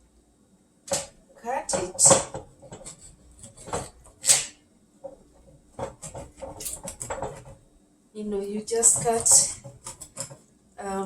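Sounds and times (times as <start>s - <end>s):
knife cutting fish: 5.8s - 7.5s, 8.8s - 10.4s.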